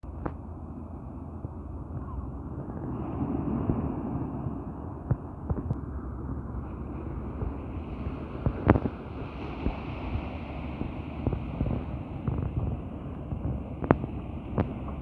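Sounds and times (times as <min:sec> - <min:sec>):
sea surf rushing: 0:00.0 - 0:15.0
wind buffeting microphone: 0:00.0 - 0:15.0.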